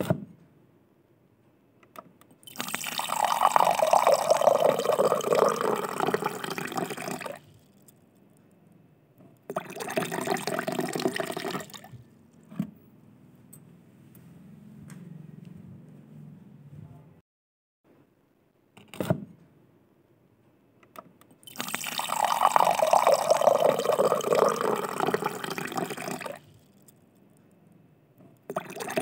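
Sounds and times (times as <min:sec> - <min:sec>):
water running: 0:02.5 - 0:07.4, 0:21.5 - 0:26.4.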